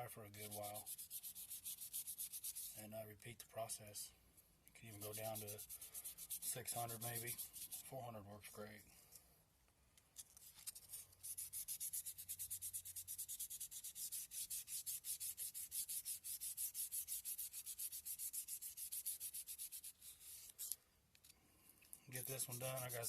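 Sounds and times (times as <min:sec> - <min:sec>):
sandpaper rubbing on wood: 0:00.3 - 0:02.8, 0:04.9 - 0:08.0, 0:10.7 - 0:20.8, 0:22.2 - 0:23.0.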